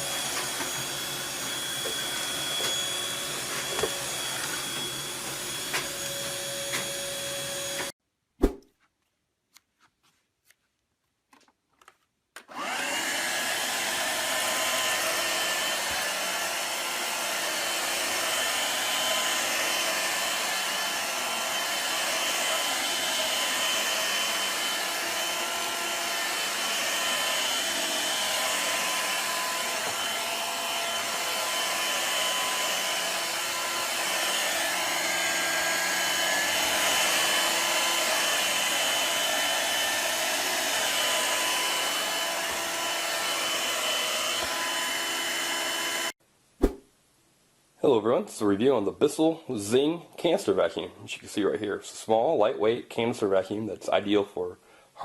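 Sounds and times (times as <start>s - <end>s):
vacuum cleaner whirring: 0.0s - 8.0s, 11.8s - 46.2s.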